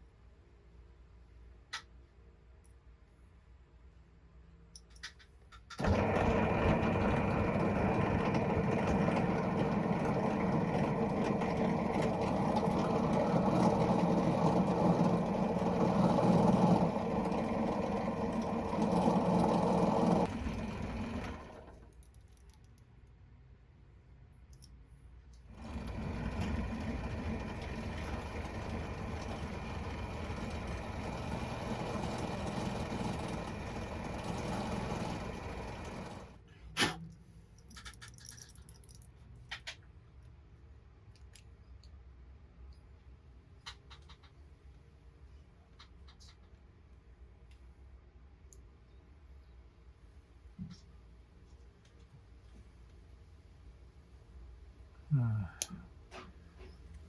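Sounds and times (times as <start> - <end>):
small motor running: 5.8 - 21.8, 25.5 - 36.4.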